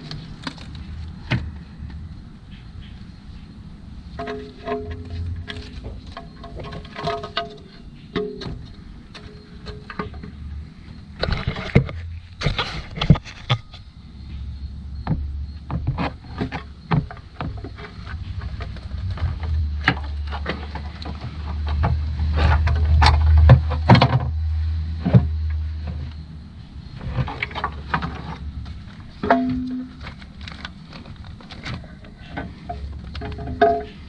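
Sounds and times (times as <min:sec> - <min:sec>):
tools tapping on engine parts: 0:04.2 - 0:10.5, 0:27.2 - 0:34.0
low steady rumble: 0:13.8 - 0:34.0.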